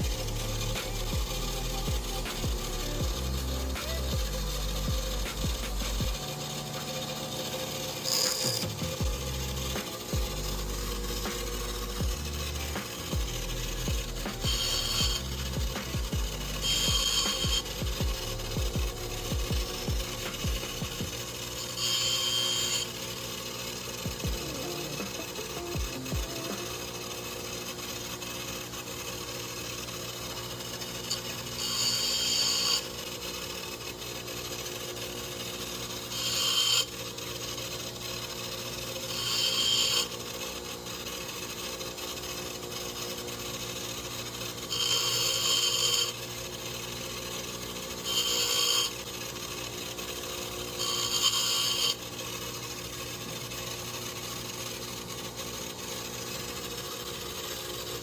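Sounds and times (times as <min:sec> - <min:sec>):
grinding on steel: 0:00.0 - 0:58.0
power tool running: 0:00.0 - 0:58.0.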